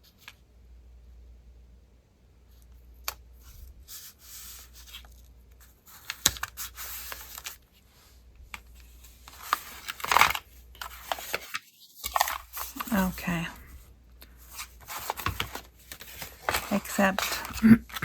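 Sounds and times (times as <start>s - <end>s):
paper rustling and sliding: 3.4s - 18.0s.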